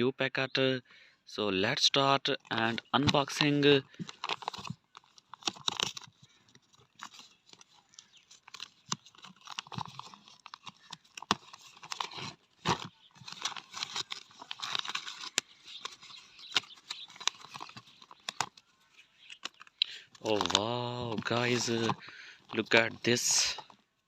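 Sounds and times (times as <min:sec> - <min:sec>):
plastic packaging tearing and crinkling: 0:03.0 - 0:23.8.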